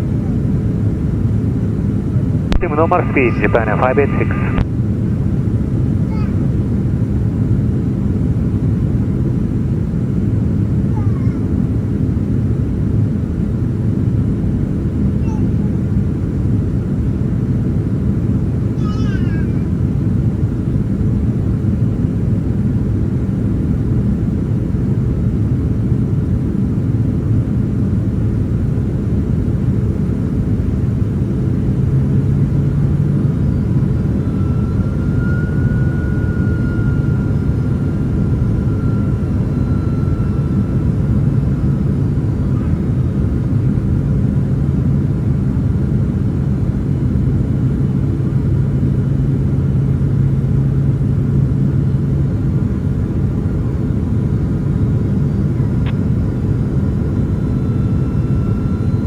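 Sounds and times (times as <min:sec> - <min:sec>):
airliner cabin roar: 0:00.0 - 0:59.0
faint thin tone: 0:33.2 - 0:43.1, 0:55.3 - 0:59.0.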